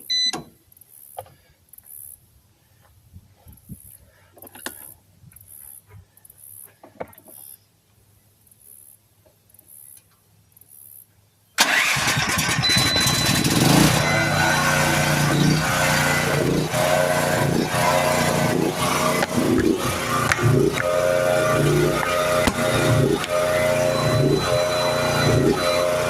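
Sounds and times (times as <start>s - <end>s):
generator engine starting and running: 11.6s - 26.0s.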